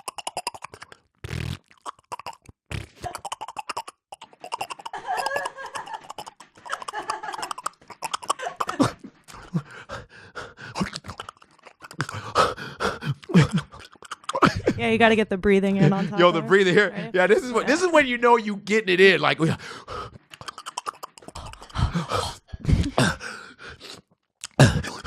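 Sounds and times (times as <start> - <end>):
man making wet mouth smacks: 10.8 - 12.2, 24.4 - 24.6.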